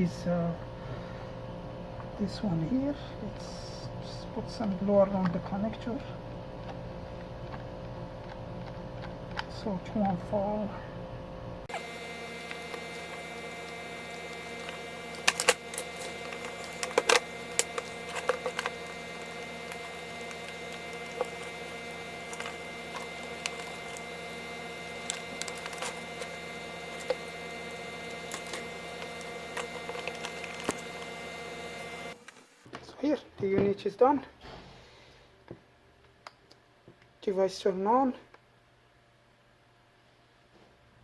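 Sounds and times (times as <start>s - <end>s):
steady electrical hum: 0.0s - 40.9s
plastic parts clicking and tapping: 12.4s - 24.1s, 25.0s - 27.3s, 28.1s - 31.2s.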